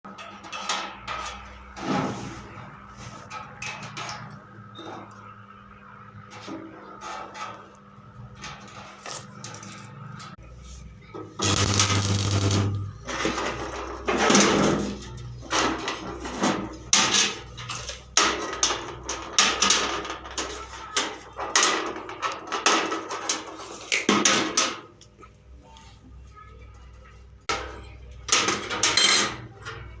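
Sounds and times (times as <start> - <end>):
low electrical hum: 0.1 - 20.5.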